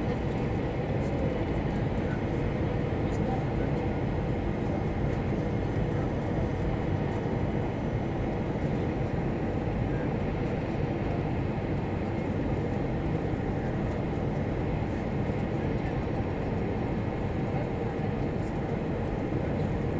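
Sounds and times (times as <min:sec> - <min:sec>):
airplane cabin engine rumble: 0:00.0 - 0:19.9.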